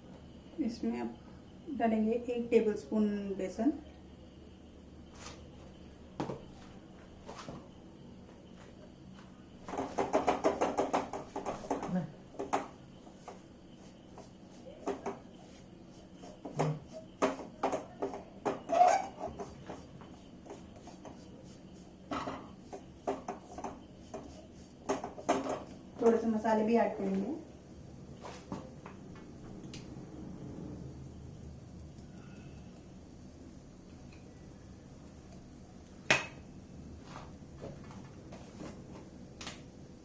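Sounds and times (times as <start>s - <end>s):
utensil scraping and knocking pan: 16.2s - 25.8s.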